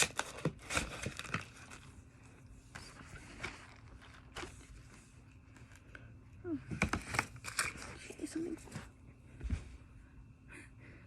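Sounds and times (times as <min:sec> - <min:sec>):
packaging rustling: 0:00.0 - 0:02.0.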